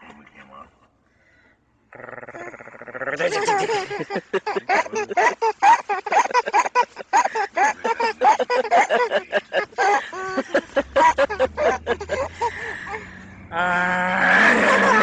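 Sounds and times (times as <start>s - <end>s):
baby laughing and squealing: 3.2s - 13.2s, 14.1s - 15.0s.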